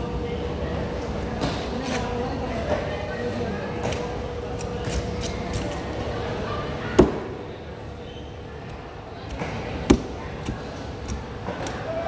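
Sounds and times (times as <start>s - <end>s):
knife chopping: 7.0s - 7.4s, 8.7s - 11.8s.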